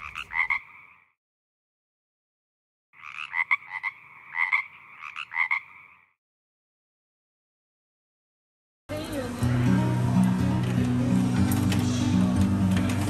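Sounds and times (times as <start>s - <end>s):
frog croaking: 0.0s - 1.2s, 2.9s - 6.2s.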